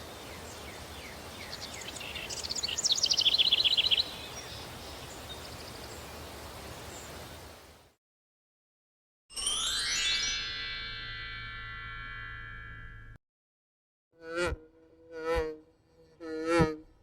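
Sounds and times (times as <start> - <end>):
breeze hiss: 0.0 - 7.9
songbirds chirping: 0.0 - 7.9.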